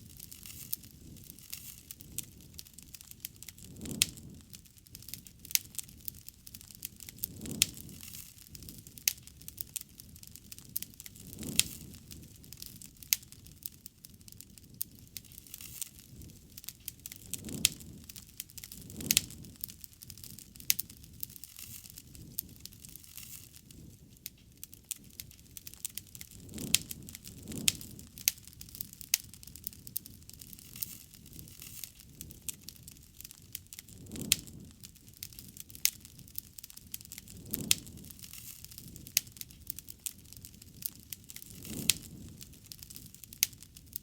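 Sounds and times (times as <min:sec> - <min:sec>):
campfire wood crackling: 0:00.0 - 0:44.0
flames rushing: 0:00.0 - 0:44.0.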